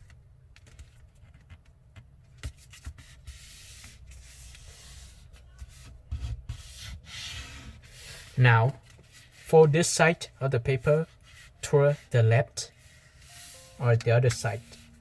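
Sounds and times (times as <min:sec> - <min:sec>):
paper rustling and rubbing: 0:02.4 - 0:09.6, 0:10.8 - 0:15.0.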